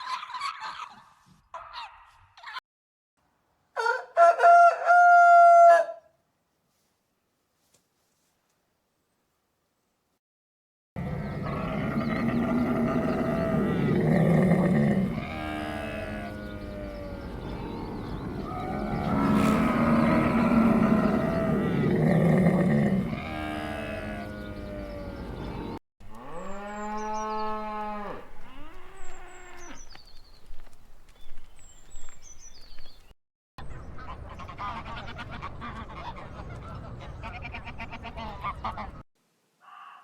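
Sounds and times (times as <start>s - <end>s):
farm animal and fowl calls: 0.0s - 2.6s, 3.8s - 6.1s, 11.0s - 29.9s, 34.0s - 39.0s, 39.6s - 40.0s.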